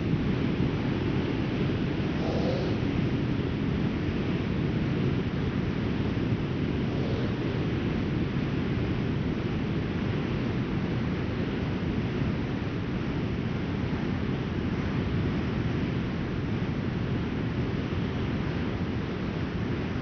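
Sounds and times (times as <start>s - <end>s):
strong wind blowing: 0.0s - 13.9s.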